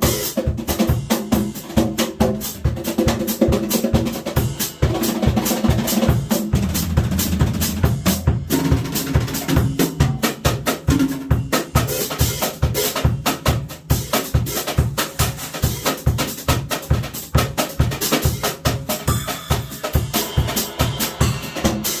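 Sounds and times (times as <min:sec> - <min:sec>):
bass drum beat: 0:00.0 - 0:20.2
snare drum played with brushes: 0:00.0 - 0:22.0.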